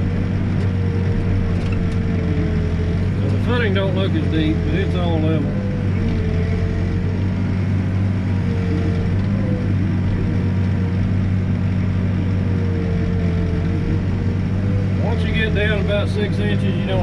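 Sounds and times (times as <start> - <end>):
backhoe diesel engine running: 0.0 - 17.0
thin wavering whine: 0.0 - 17.0.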